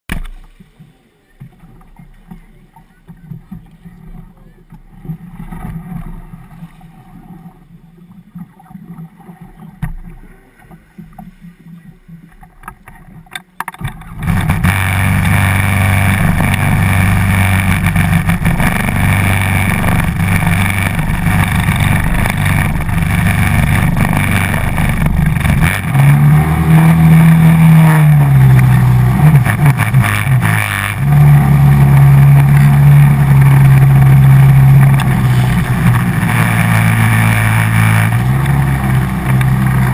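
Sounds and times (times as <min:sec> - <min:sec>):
jet ski engine revving: 0:13.8 - 0:39.9.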